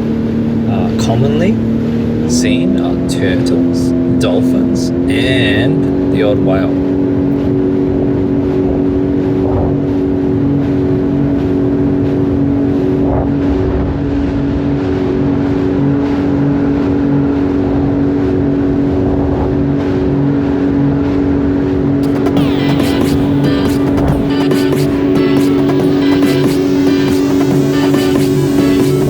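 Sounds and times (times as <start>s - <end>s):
jet ski engine running: 0.0s - 29.0s.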